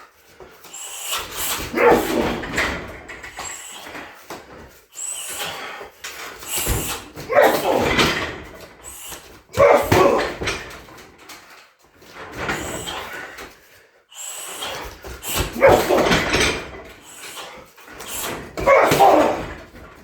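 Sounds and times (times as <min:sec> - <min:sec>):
kicks smacking a heavy bag: 0:09.5 - 0:11.0, 0:15.2 - 0:16.9, 0:18.5 - 0:20.0.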